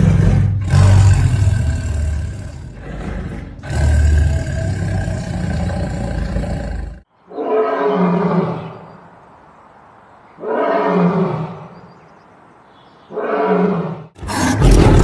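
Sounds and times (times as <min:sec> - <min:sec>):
tiger roaring: 0:00.0 - 0:08.8, 0:13.1 - 0:15.0.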